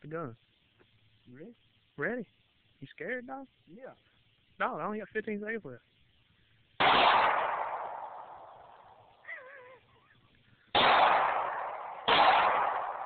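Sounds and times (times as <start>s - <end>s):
pistol shots ringing: 6.8s - 8.7s, 10.8s - 13.0s.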